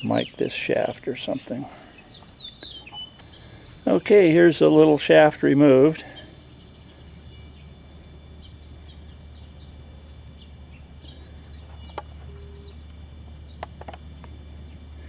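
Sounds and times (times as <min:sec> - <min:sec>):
birds chirping: 0:00.0 - 0:15.0
steady low hum: 0:00.0 - 0:15.0
sharp clicks: 0:11.7 - 0:15.0.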